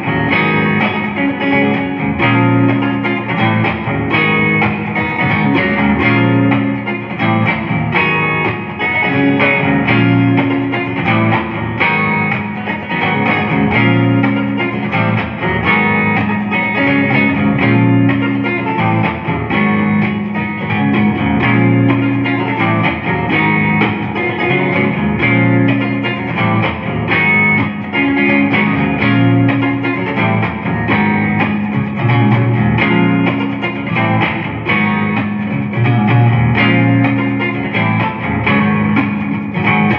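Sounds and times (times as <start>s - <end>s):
clean electric guitar: 0.0s - 39.9s.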